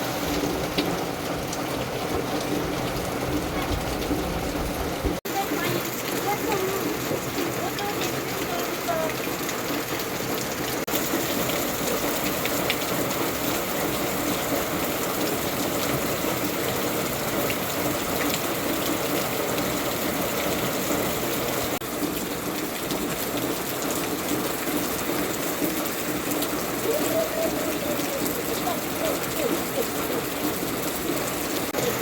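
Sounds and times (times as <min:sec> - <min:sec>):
steady rain hiss: 0:00.0 - 0:32.0
faint raindrop ticks: 0:00.3 - 0:20.8.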